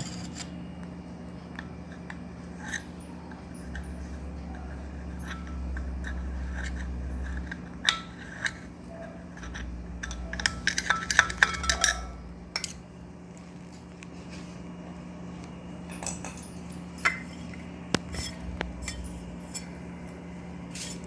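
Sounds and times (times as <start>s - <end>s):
metallic clicks of fan parts: 0.0s - 13.9s, 15.4s - 21.0s
low rumble: 2.8s - 13.4s, 18.0s - 20.6s.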